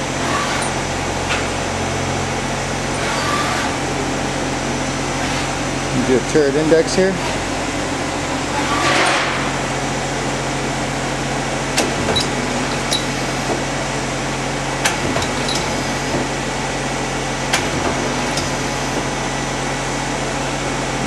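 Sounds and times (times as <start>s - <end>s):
machine humming: 0.0s - 21.0s
lathe turret clacking: 11.8s - 13.6s.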